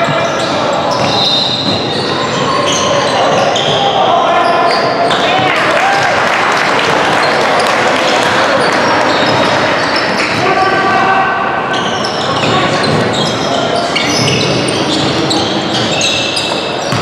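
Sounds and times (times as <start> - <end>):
shoe squeaks on court: 0.0 - 3.9, 11.7 - 17.0
voices: 0.0 - 17.0
basketball dribbling: 14.2 - 17.0.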